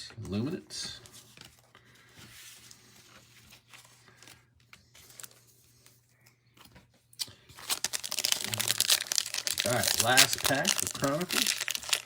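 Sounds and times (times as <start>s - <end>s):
cards rustling: 7.2s - 12.0s
foil wrapper crinkling: 7.2s - 12.0s.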